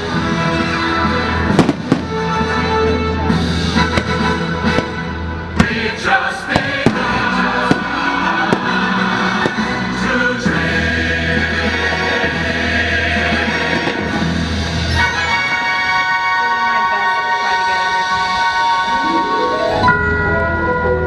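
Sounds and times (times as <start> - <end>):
loud soundtrack music: 0.0 - 19.3
firework bangs: 1.5 - 2.4, 3.8 - 10.0.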